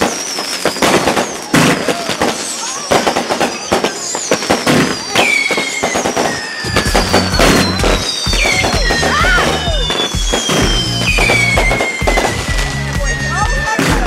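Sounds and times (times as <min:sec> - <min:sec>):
firework whistles: 0:00.0 - 0:14.0
fireworks pops and bangs: 0:00.0 - 0:14.0
music with heavy bass beat: 0:07.0 - 0:14.0.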